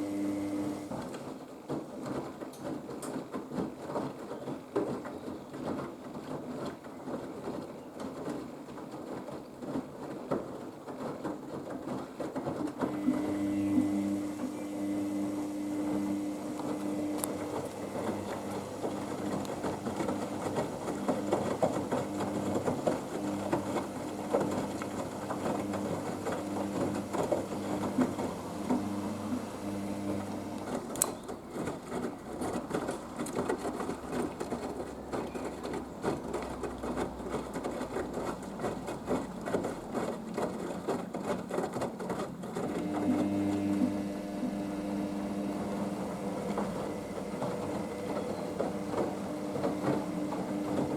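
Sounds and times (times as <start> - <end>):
washing machine motor humming: 0.0 - 4.3, 9.0 - 50.9
laundry and water tumbling and sloshing: 0.0 - 50.9.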